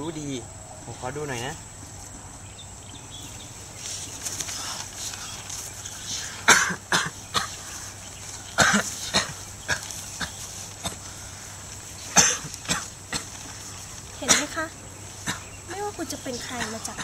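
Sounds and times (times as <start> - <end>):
person coughing: 6.4 - 7.6, 8.6 - 11.0, 12.1 - 13.3.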